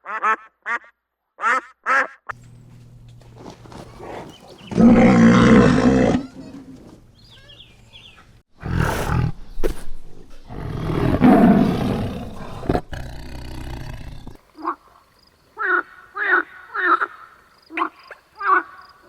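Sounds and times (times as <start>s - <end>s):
large animal roaring: 4.0s - 6.6s, 8.6s - 14.4s
animal pitched calls: 4.0s - 6.7s, 10.5s - 14.4s.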